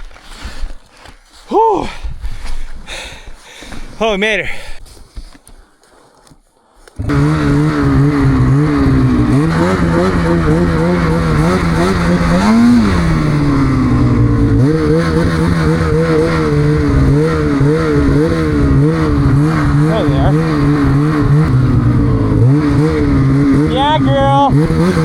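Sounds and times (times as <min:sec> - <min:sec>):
snowmobile engine running: 0:07.0 - 0:25.0.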